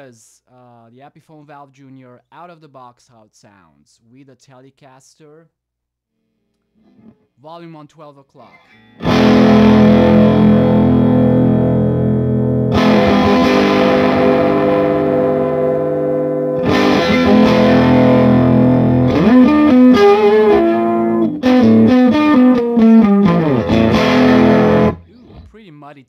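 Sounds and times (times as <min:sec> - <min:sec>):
electric guitar chords and notes: 0:08.6 - 0:25.5.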